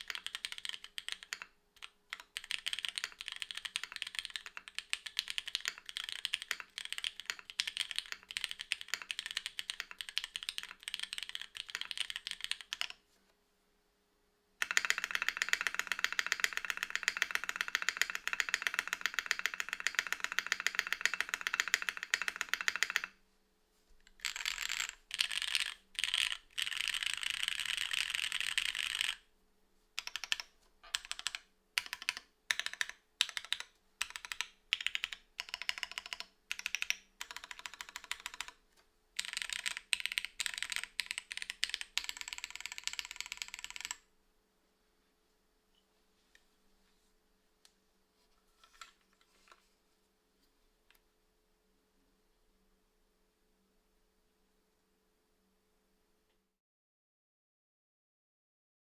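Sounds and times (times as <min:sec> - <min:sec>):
mechanical keyboard typing: 0:00.0 - 0:13.0, 0:14.6 - 0:23.2, 0:24.1 - 0:29.3, 0:30.0 - 0:38.6, 0:39.2 - 0:44.1.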